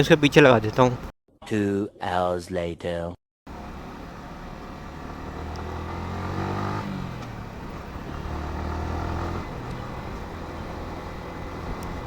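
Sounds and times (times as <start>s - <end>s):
motorcycle engine running: 3.5s - 12.0s.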